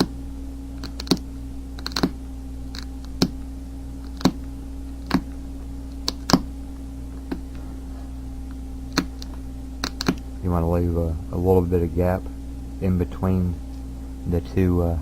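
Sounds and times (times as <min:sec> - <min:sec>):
flint flaking clicks: 0:01.8 - 0:03.4.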